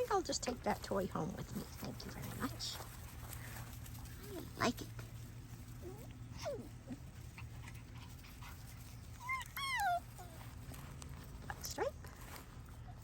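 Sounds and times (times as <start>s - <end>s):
puppies whimpering: 5.7s - 10.7s.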